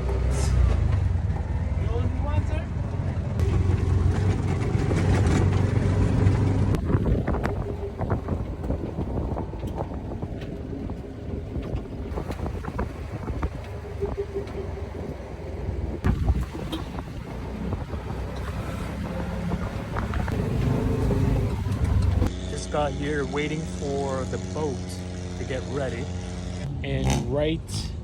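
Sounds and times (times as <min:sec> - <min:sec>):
engine rumble: 0:00.0 - 0:28.0
wind buffeting microphone: 0:03.4 - 0:22.3.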